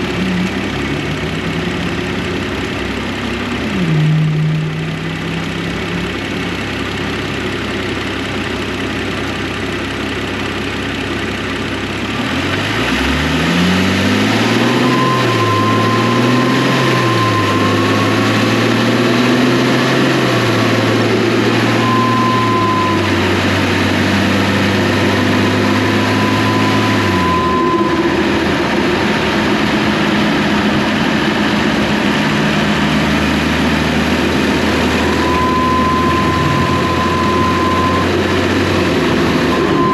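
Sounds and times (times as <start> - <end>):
car engine idling and revving: 0.0 - 39.9
thin high whistle: 14.5 - 18.6, 21.6 - 23.2, 25.6 - 28.2, 35.0 - 38.2.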